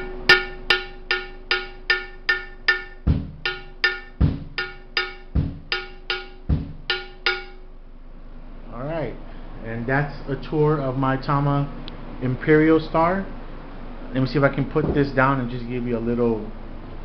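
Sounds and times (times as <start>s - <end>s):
bass drum thumping: 0.0s - 7.6s
drum kit effects cymbal hits: 0.0s - 7.7s.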